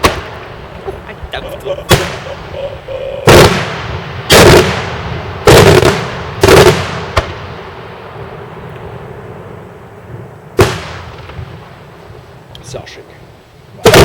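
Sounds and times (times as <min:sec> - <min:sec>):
firework shells bursting: 0:00.0 - 0:08.9
sharp firework crack: 0:00.0 - 0:12.8, 0:13.7 - 0:14.0.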